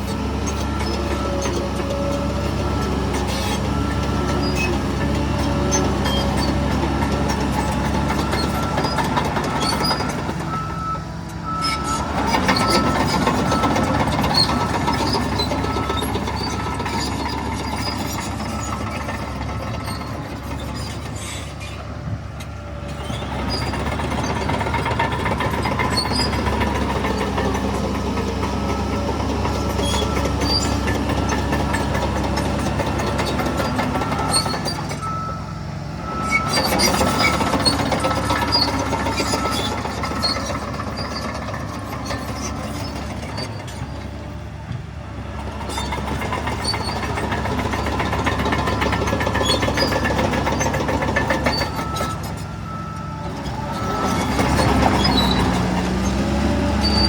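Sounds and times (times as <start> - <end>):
heavy diesel machinery engine: 0.0 - 57.0
reversing alarm beeping: 7.6 - 20.6, 23.6 - 42.9, 46.7 - 55.6.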